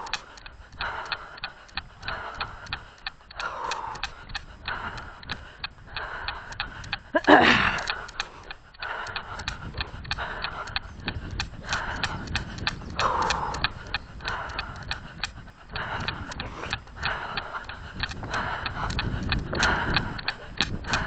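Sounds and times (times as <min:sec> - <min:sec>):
heavy rhythmic breathing: 0:00.0 - 0:21.0.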